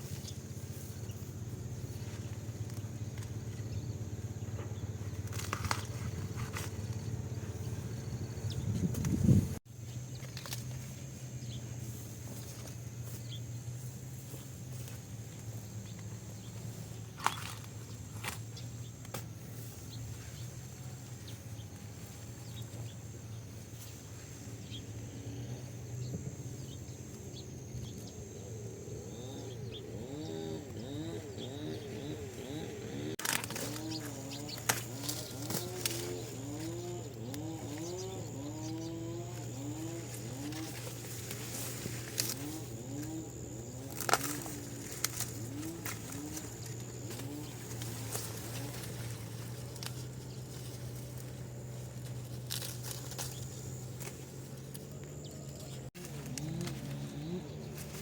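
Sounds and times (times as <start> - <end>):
low hum: 0.0 - 58.0.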